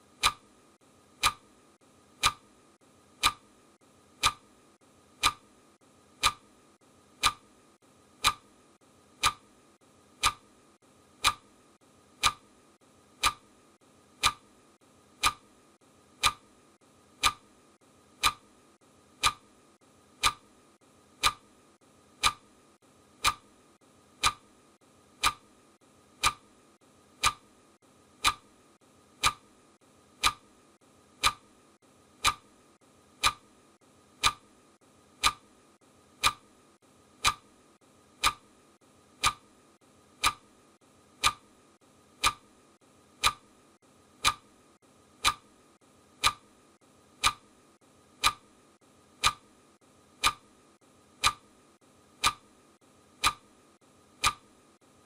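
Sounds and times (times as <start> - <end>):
clock ticking: 0.1 - 0.5, 1.1 - 1.5, 2.2 - 2.5, 3.2 - 3.5, 4.2 - 4.5, 5.2 - 5.5, 6.2 - 6.6, 7.2 - 7.5, 8.2 - 8.5, 9.2 - 9.5, 10.2 - 10.5, 11.2 - 11.5, 12.2 - 12.5, 13.2 - 13.5, 14.2 - 14.5, 15.2 - 15.5, 16.2 - 16.6, 17.2 - 17.6, 18.2 - 18.5, 19.2 - 19.5, 20.2 - 20.5, 21.2 - 21.5, 22.2 - 22.5, 23.2 - 23.5, 24.2 - 24.5, 25.2 - 25.5, 26.2 - 26.5, 27.2 - 27.5, 28.2 - 28.5, 29.2 - 29.5, 30.2 - 30.5, 31.2 - 31.5, 32.2 - 32.5, 33.2 - 33.5, 34.2 - 34.5, 35.2 - 35.5, 36.2 - 36.5, 37.2 - 37.5, 38.2 - 38.5, 39.2 - 39.5, 40.2 - 40.5, 41.2 - 41.5, 42.2 - 42.5, 43.2 - 43.5, 44.2 - 44.5, 45.2 - 45.5, 46.2 - 46.5, 47.2 - 47.5, 48.2 - 48.5, 49.2 - 49.5, 50.2 - 50.5, 51.2 - 51.5, 52.2 - 52.5, 53.2 - 53.5, 54.2 - 54.5.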